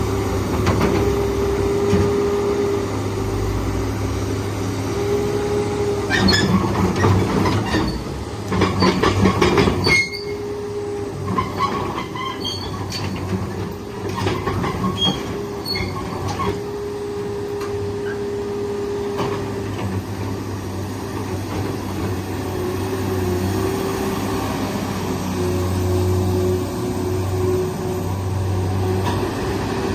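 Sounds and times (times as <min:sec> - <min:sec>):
excavator humming: 0:00.0 - 0:29.9
excavator whine: 0:00.0 - 0:29.9
metallic clanking and squealing: 0:05.9 - 0:10.6, 0:11.2 - 0:16.7.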